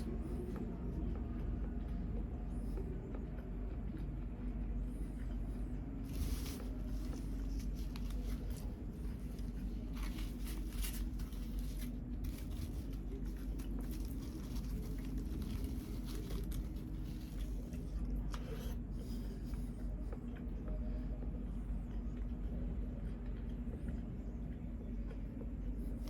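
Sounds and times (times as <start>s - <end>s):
eating and handling sounds: 0.0s - 26.0s
steady low hum: 0.0s - 26.0s
banana leaf crackles and rustles: 6.0s - 18.4s.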